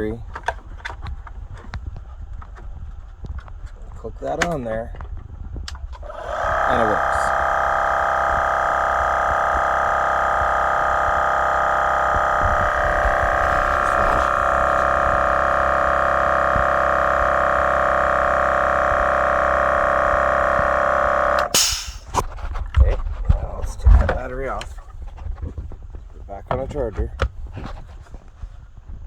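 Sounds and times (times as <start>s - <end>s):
air compressor running: 5.7s - 22.4s.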